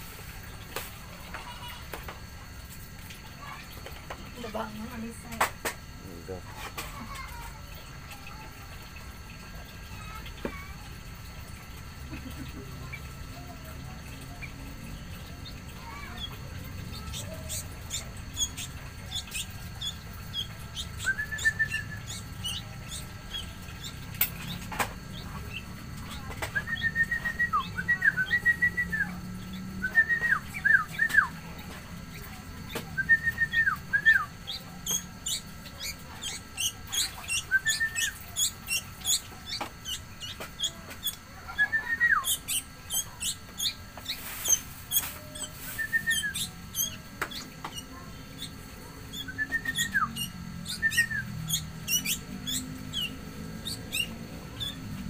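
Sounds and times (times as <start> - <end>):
rapid high-pitched chirps: 7.0 - 55.0
bird whistled phrases: 16.9 - 23.9, 25.2 - 31.4, 32.9 - 54.8.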